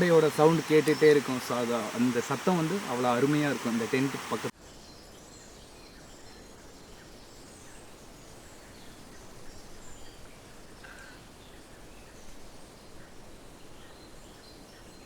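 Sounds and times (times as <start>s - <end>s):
stream flowing: 0.0s - 4.5s.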